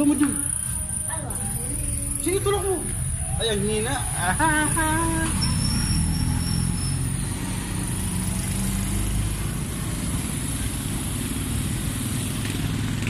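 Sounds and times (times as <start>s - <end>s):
road noise hiss: 0.0s - 13.0s
vehicle engine humming: 0.0s - 13.0s.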